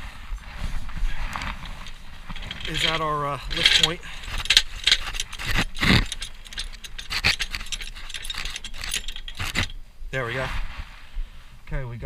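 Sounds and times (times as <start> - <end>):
car jack metal clicking and scraping: 1.2 - 9.8.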